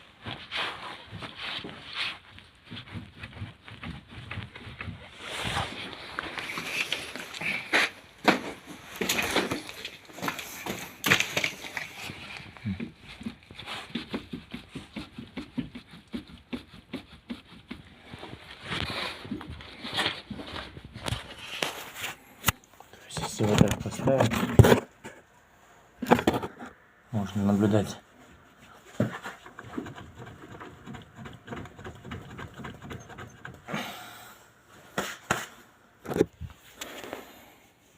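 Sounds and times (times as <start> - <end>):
suspension knocking and clicking: 29.4 - 33.7.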